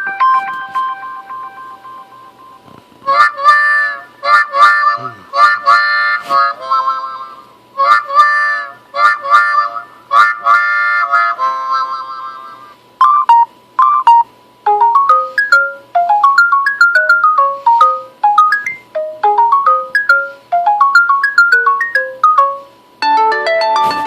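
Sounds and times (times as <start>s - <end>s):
phone ringtone melody: 0.0s - 7.0s, 13.0s - 24.0s.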